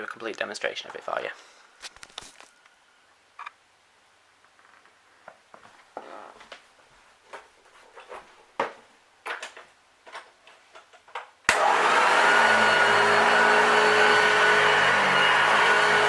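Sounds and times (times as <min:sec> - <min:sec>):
vacuum cleaner motor whine: 0:11.5 - 0:16.0.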